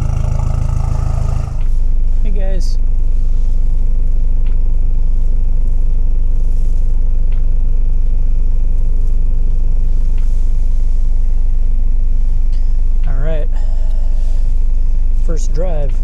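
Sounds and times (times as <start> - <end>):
diesel engine running: 0.0 - 1.9.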